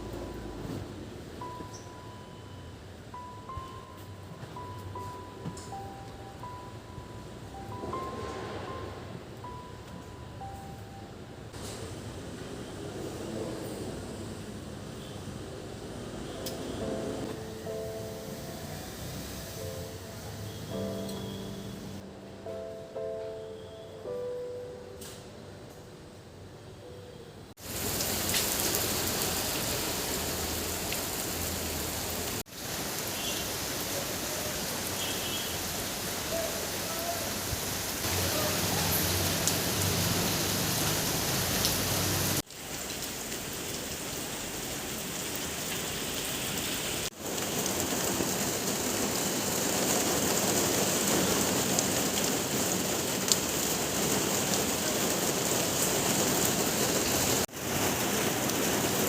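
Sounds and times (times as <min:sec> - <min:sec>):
rain hissing: 0:11.6 - 0:22.0, 0:27.6 - 0:59.0.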